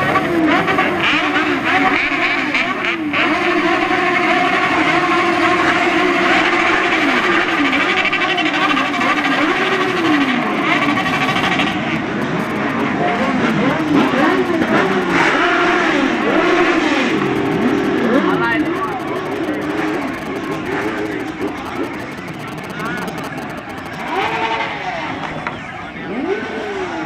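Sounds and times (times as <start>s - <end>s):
vehicle engines revving: 0.0s - 27.0s.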